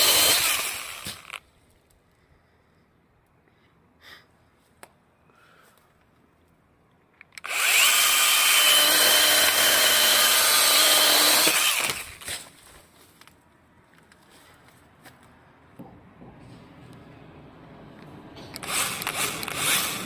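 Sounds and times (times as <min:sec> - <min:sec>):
power tool motor whining: 0:00.0 - 0:01.4, 0:07.4 - 0:12.3, 0:18.5 - 0:20.0.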